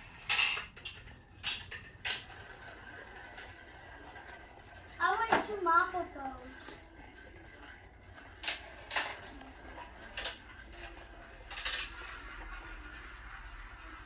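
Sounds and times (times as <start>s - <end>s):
marble clacking on track: 0.1s - 14.0s.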